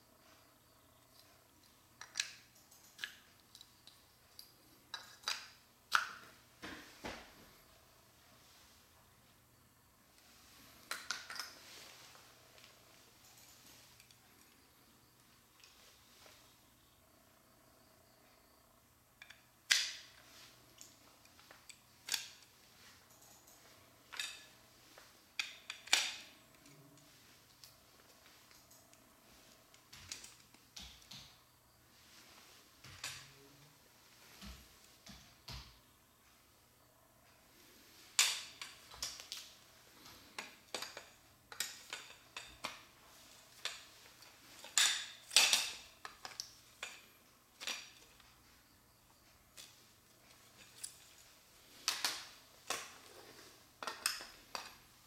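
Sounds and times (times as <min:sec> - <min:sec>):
plastic parts clicking and clattering: 0:01.1 - 0:06.2, 0:10.8 - 0:11.6, 0:19.2 - 0:22.6, 0:23.5 - 0:24.6, 0:25.3 - 0:26.9, 0:29.7 - 0:31.4, 0:38.1 - 0:48.3, 0:49.5 - 0:54.9
plastic pieces clicking and knocking: 0:02.0 - 0:06.3, 0:10.9 - 0:11.6, 0:40.4 - 0:42.9, 0:43.6 - 0:48.3, 0:51.8 - 0:53.0, 0:53.8 - 0:54.8.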